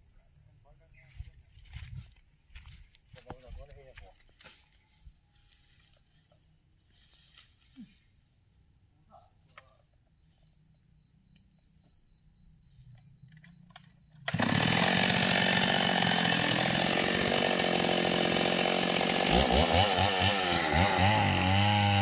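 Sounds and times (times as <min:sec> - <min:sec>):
mini chainsaw at full throttle: 0:14.3 - 0:22.0.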